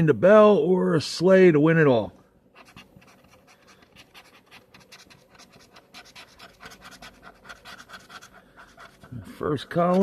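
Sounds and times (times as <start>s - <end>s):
lottery ticket being scratched: 2.6s - 10.0s.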